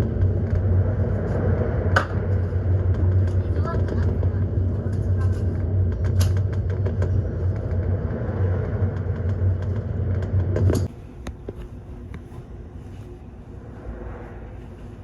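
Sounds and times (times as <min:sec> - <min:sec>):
rushing noise: 0:00.0 - 0:11.1
ship engine low hum: 0:00.0 - 0:15.0.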